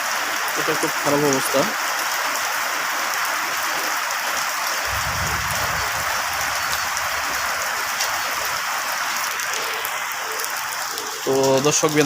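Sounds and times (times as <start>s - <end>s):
steady rain falling: 0.0s - 12.0s
low rumble: 4.8s - 9.2s.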